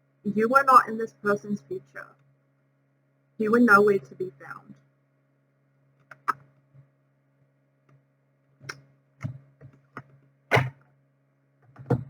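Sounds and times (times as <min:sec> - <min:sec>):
electrical hum: 0:00.0 - 0:07.0.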